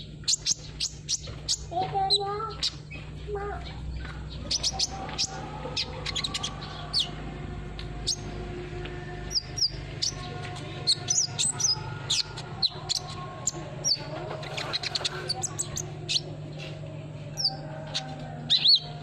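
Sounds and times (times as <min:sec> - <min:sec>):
bird chirping song: 0:00.0 - 0:19.0
steady low hum: 0:00.0 - 0:19.0.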